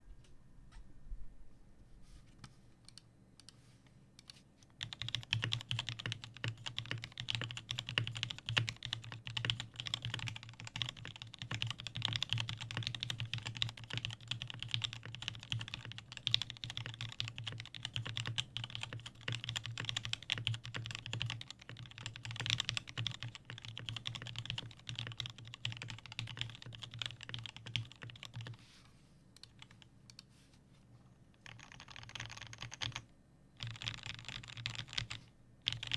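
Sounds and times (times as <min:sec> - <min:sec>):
fast typing on mechanical keyboard: 0:04.8 - 0:28.6, 0:31.4 - 0:35.9.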